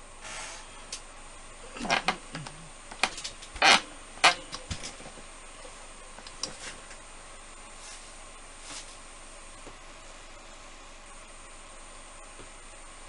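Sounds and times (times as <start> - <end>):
short hiss: 0.2 - 0.8.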